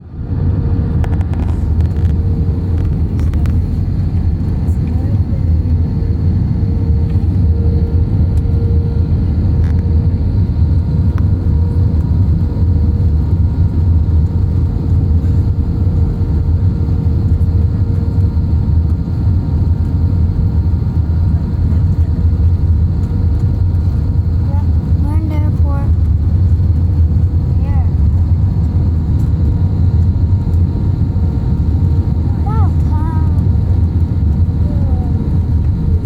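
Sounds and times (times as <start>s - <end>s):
jet engine cabin rumble: 0.0s - 36.0s.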